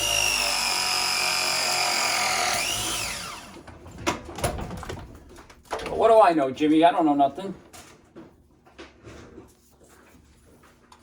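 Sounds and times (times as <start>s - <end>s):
power drill whining: 0.0s - 3.6s.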